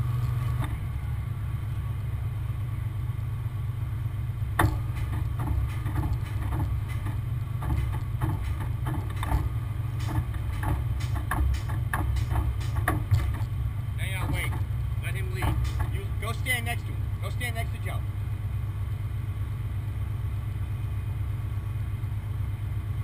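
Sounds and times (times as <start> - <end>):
truck diesel engine rumbling: 0.0 - 23.0
knocks and clanks: 4.5 - 16.9.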